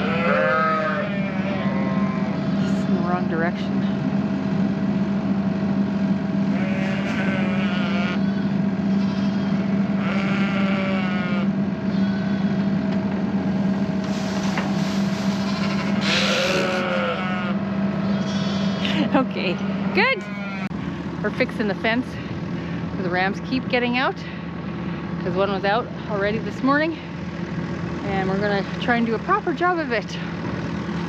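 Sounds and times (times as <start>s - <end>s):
sheep bleating: 0.0s - 2.7s, 6.5s - 12.7s, 15.5s - 19.0s, 19.7s - 20.7s
tractor engine running: 2.2s - 7.4s, 20.7s - 31.0s.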